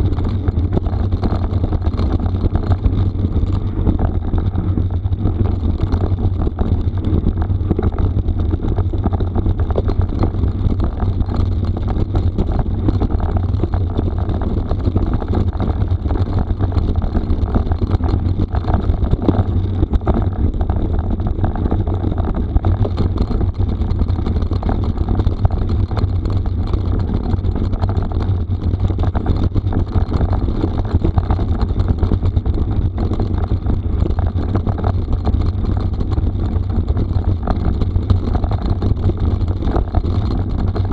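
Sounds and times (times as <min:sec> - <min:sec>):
bike tyres rolling on gravel: 0:00.0 - 0:40.9
wind rumble on microphone: 0:00.0 - 0:40.9.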